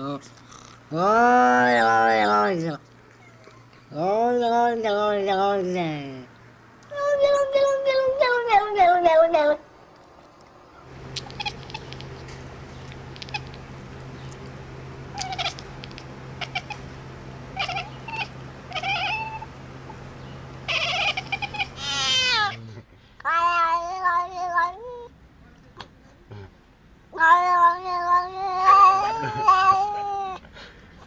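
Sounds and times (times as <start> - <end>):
cat meowing: 11.1 - 12.2, 13.1 - 13.7, 15.1 - 16.8, 17.6 - 19.5, 20.7 - 22.6.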